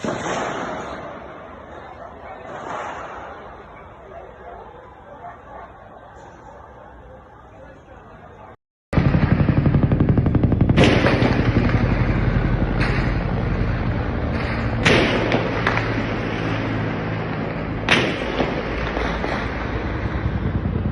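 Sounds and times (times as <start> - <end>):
gunshots echoing: 0.0 - 1.4, 9.0 - 19.9
low drone: 9.0 - 20.9.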